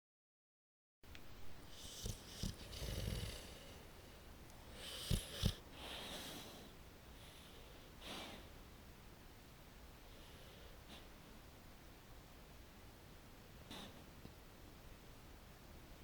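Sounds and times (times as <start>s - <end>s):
dog snoring: 1.5s - 8.5s.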